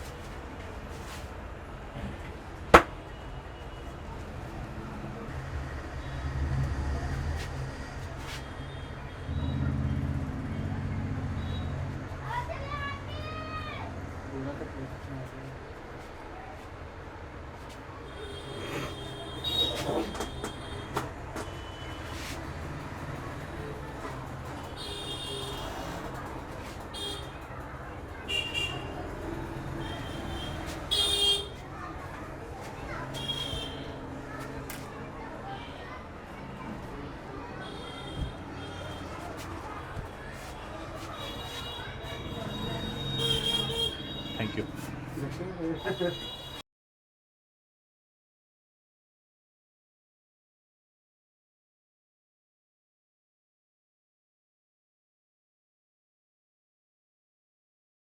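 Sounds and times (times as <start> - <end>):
low rumble of traffic: 0.0 - 46.4
vehicle horns tooting: 18.1 - 22.1, 24.7 - 25.7, 28.3 - 28.9, 29.8 - 31.6, 33.2 - 34.0, 41.1 - 44.7, 45.8 - 46.6.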